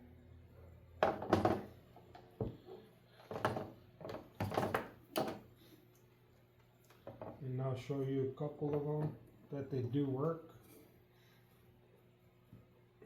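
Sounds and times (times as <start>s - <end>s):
faint steady hum: 0.0s - 13.0s
objects knocking on workbench: 1.0s - 1.8s.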